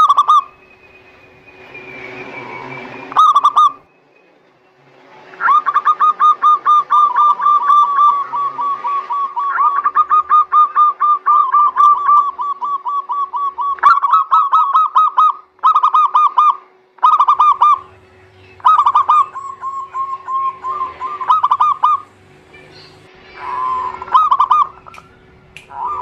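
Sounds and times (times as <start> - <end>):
doves cooing: 0.0 - 0.6, 2.4 - 3.8, 5.3 - 26.0.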